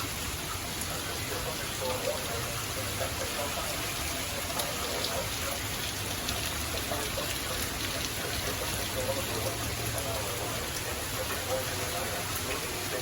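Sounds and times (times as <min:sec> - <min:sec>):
heavy rain hissing: 0:00.0 - 0:13.0
raindrops ticking on surfaces: 0:00.0 - 0:13.0.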